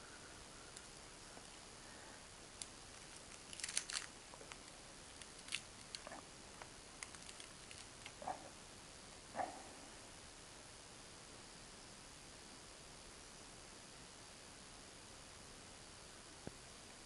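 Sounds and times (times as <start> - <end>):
handling clicks and crinkles: 2.6 - 8.4
crinkly rustle: 2.6 - 8.5.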